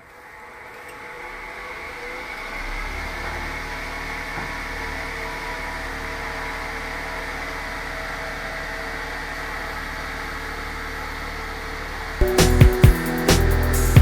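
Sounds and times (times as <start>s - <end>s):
music with heavy beat: 12.2s - 14.0s.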